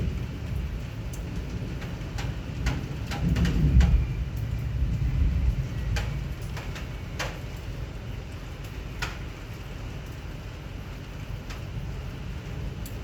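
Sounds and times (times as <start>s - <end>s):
thunder rumbling: 0.0s - 9.4s
steady rain: 0.0s - 13.0s.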